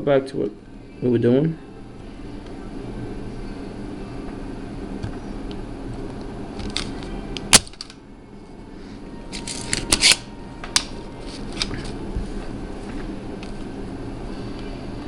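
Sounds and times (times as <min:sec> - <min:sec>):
desoldering pump snapping: 0:06.2 - 0:08.0, 0:09.3 - 0:12.0.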